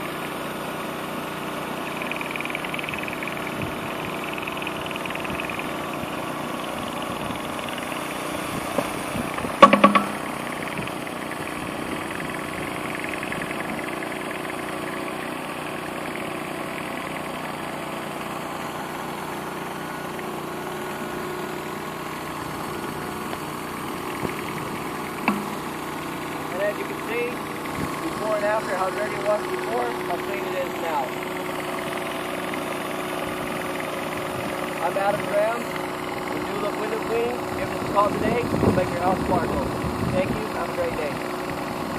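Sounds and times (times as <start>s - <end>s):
pressure washer running: 0.0s - 41.9s
loud knocks: 9.6s - 10.3s.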